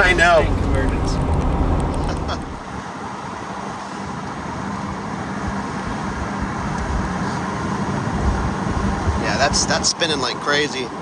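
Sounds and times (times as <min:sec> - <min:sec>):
car road and engine rumble: 0:00.0 - 0:02.8.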